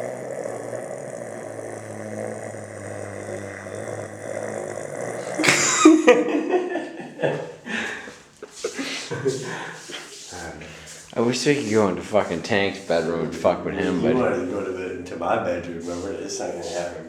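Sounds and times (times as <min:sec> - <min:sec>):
man snoring: 0:00.0 - 0:06.0.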